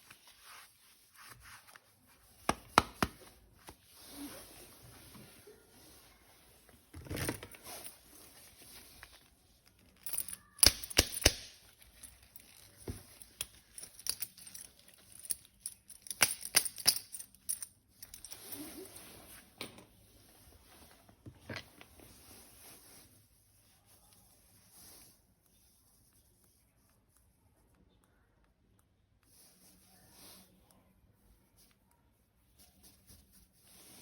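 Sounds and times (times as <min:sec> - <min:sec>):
soft plastic rustling: 0:00.0 - 0:10.6, 0:17.4 - 0:34.0.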